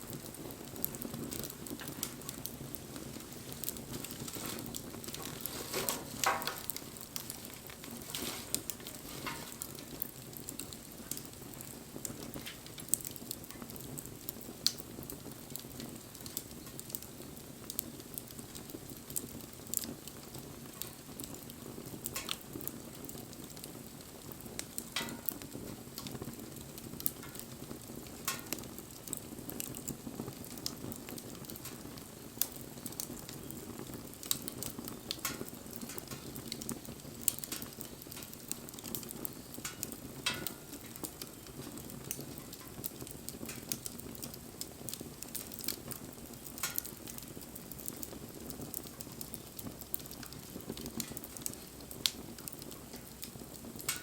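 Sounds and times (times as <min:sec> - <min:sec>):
wood fire crackling and popping: 0:00.0 - 0:54.0.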